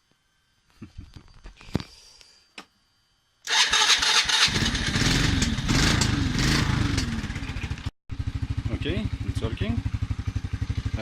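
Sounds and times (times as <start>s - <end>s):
motorcycle engine starting and running: 3.5s - 11.0s.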